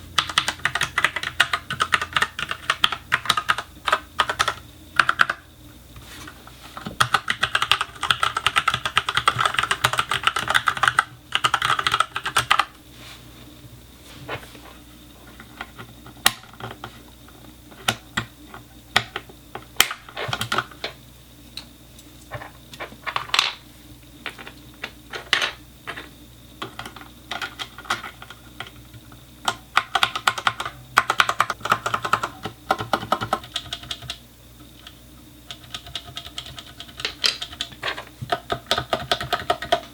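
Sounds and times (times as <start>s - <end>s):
mechanical keyboard typing: 0.2s - 5.4s, 7.0s - 12.7s, 29.5s - 34.2s, 35.5s - 39.9s.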